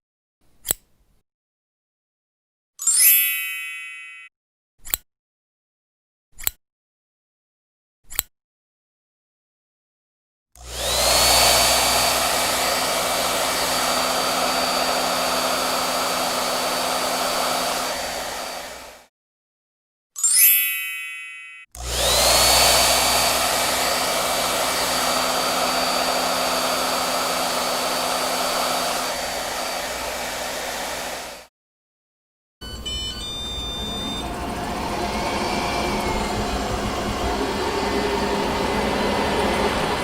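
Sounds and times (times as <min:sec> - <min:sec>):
appliance motor and fan whining: 0:10.6 - 0:19.1, 0:21.8 - 0:31.5, 0:32.6 - 0:40.0
short electronic beeps: 0:32.6 - 0:34.4.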